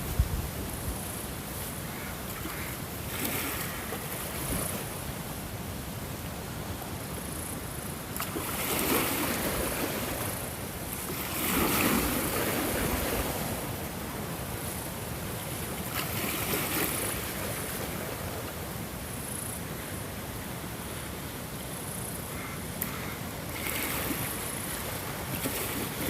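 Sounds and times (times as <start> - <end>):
waves breaking: 0.0 - 26.0.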